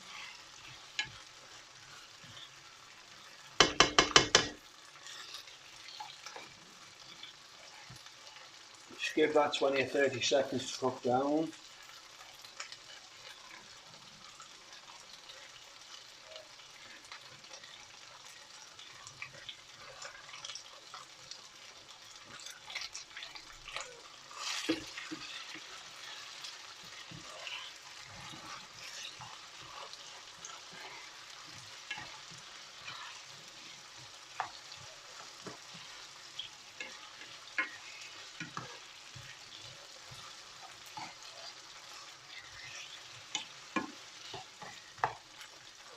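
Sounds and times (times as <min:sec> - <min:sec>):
peppers sizzling in oil: 0:00.0 - 0:45.9
utensil clicking against pan: 0:03.6 - 0:04.6.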